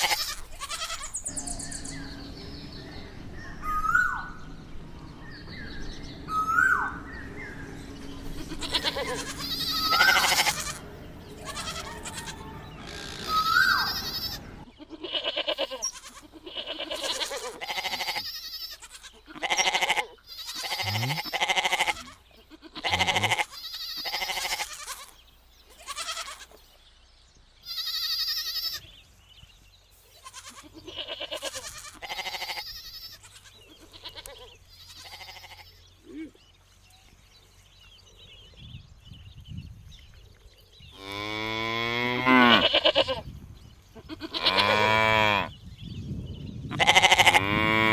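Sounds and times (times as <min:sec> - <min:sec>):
goat kid bleating: 0:00.0 - 0:01.3, 0:08.3 - 0:10.8, 0:11.4 - 0:26.6, 0:27.6 - 0:28.9, 0:30.2 - 0:36.4, 0:42.5 - 0:43.3, 0:44.0 - 0:45.4, 0:46.7 - 0:47.4.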